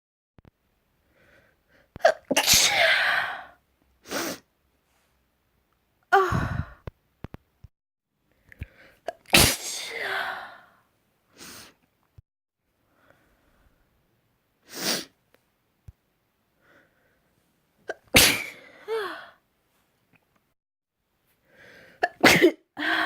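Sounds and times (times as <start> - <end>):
breathing: 1.0 - 2.0, 8.3 - 9.1, 12.8 - 13.9, 16.6 - 17.5, 21.3 - 22.0
person sneezing wetly: 2.0 - 3.5, 9.1 - 10.4, 17.9 - 19.2, 22.0 - 22.6.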